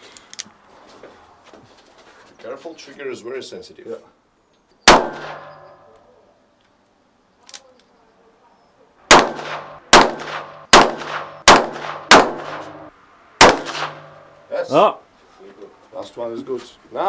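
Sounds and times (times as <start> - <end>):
revolver gunshots: 4.9 - 5.7, 9.1 - 14.3.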